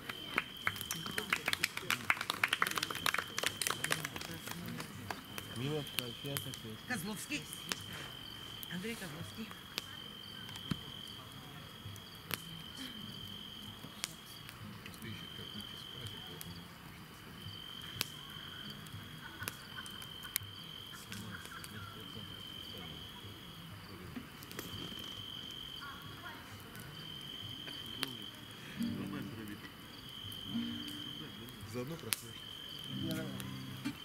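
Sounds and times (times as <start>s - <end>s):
campfire crackling and popping: 0.0s - 34.0s
crickets trilling: 0.0s - 34.0s.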